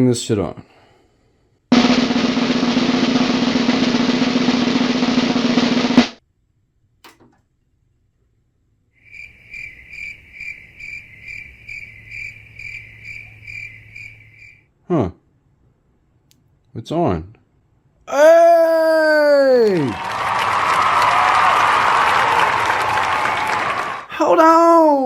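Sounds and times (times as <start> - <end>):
drum roll: 1.7 - 6.2
crickets chirping: 9.0 - 14.6.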